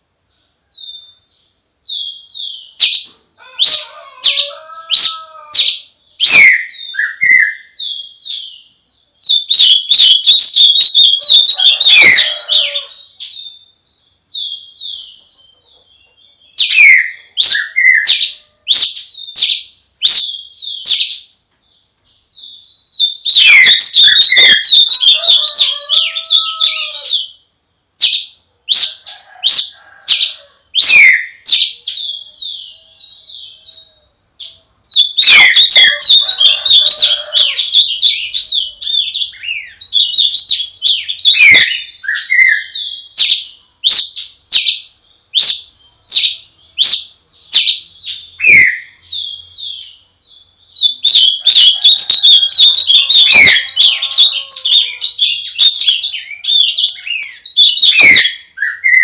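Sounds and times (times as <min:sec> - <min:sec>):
songbird chirping and whistling: 0:00.7 - 0:59.0
rapid bird warbling: 0:00.9 - 0:08.6, 0:09.2 - 0:15.8, 0:22.7 - 0:27.4, 0:28.0 - 0:44.8, 0:50.7 - 0:59.0.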